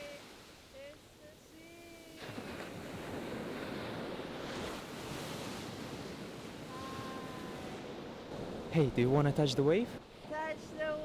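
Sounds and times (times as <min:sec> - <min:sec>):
waves breaking on shore: 0:00.0 - 0:11.0.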